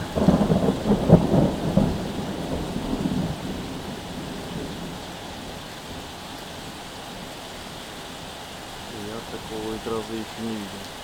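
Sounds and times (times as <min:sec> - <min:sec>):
rolling thunder: 0:00.0 - 0:07.4
heavy rain pouring: 0:00.0 - 0:11.0.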